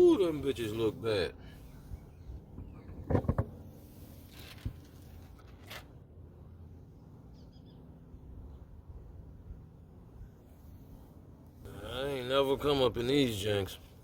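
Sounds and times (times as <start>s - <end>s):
outdoor background noise: 0.0s - 14.0s
faint bird chirp: 1.4s - 3.1s, 6.9s - 8.8s.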